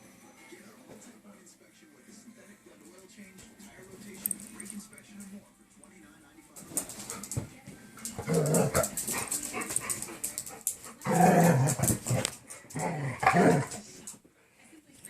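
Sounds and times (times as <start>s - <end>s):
dogs growling and barking: 8.0s - 13.9s.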